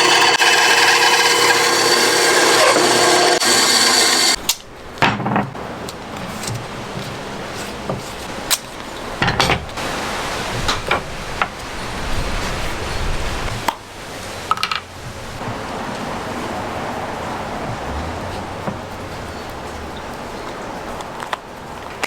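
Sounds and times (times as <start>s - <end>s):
tool hissing on wood: 0.0s - 4.4s.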